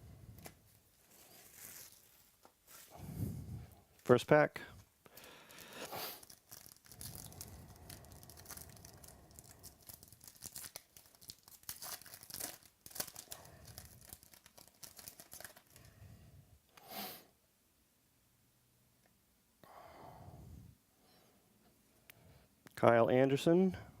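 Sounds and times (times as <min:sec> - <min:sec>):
card pack wrapper crinkling: 0:01.1 - 0:02.9, 0:05.1 - 0:15.8.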